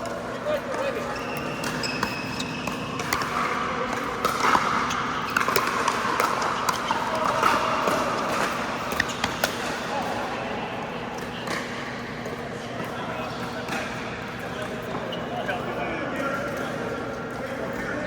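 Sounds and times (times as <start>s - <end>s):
murmur of voices: 6.4s - 18.0s.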